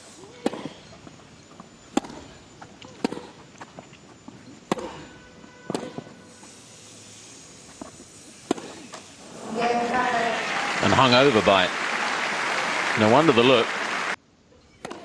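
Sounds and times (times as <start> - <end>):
tennis ball hit by racquets: 0.3 - 0.9, 1.9 - 3.4, 4.5 - 6.2, 7.8 - 9.1, 14.8 - 15.0.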